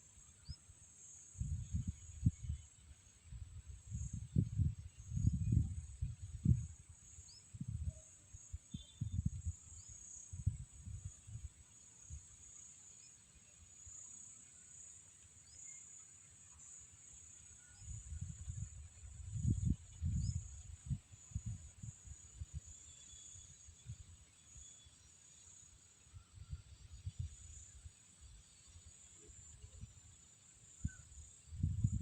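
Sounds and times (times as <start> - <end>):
insects droning: 0.0 - 32.0
wind rumbling on microphone: 1.4 - 12.2, 17.8 - 22.8, 26.2 - 28.4, 30.8 - 32.0.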